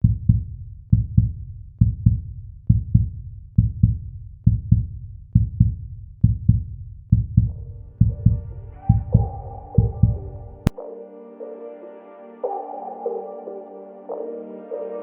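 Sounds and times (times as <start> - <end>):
double bass-drum thumps: 0.0 - 10.2.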